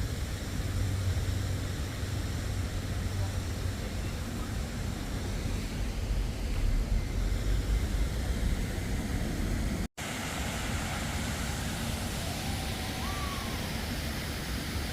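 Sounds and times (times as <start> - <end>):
boat engine rumble: 0.0 - 14.9
steady rushing noise: 0.0 - 14.9
faint whistle-like call: 12.4 - 13.7.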